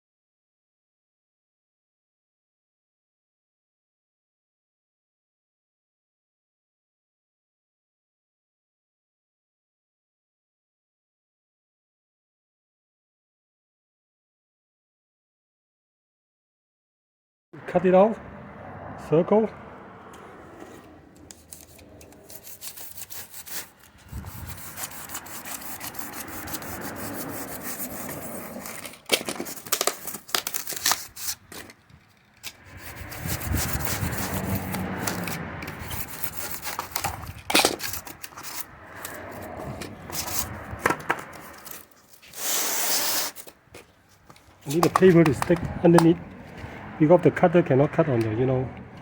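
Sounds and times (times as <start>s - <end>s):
hand cutter scraping: 20.1s - 46.9s.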